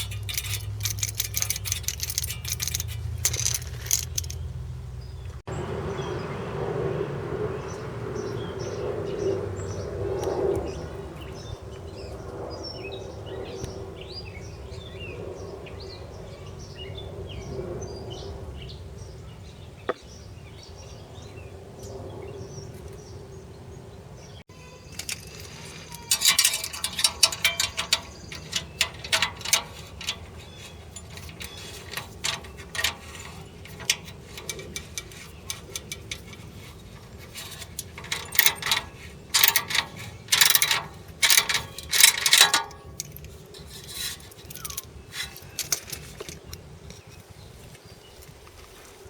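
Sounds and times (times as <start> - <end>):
metallic clinking and rattling: 0.0 - 4.6, 24.9 - 46.6.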